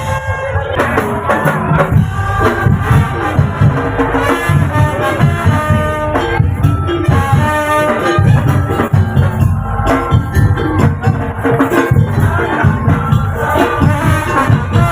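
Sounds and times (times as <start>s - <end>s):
fast drumming with shakers: 0.0s - 14.9s
wavering melody line: 5.6s - 14.9s.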